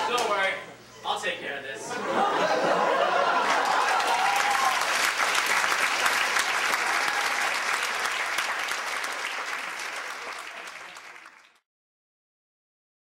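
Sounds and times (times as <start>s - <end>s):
audience applauding: 3.0s - 11.6s.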